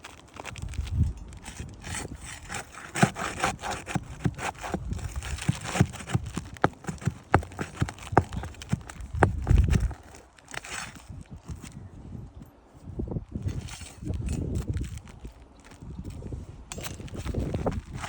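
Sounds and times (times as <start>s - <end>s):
footsteps scuffing on gritty surface: 0.0s - 11.7s.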